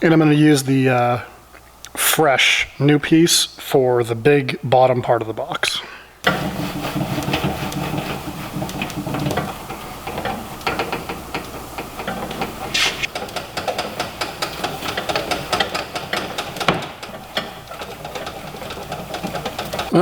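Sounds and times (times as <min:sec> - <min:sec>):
clay bar scrubbing on metal: 0:06.2 - 0:20.0
short hiss: 0:12.7 - 0:13.1.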